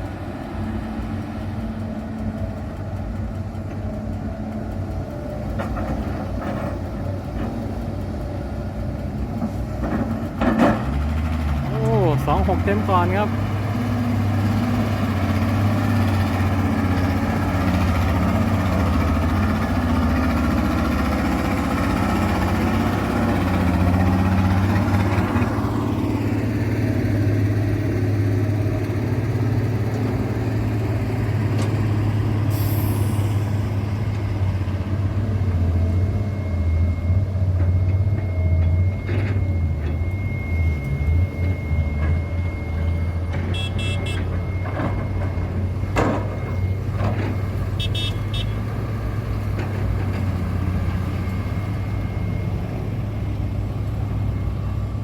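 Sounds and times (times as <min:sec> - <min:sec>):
excavator diesel engine: 0:00.0 - 0:55.0
air brake hiss: 0:32.5 - 0:33.6
thin steady whine: 0:35.4 - 0:47.6.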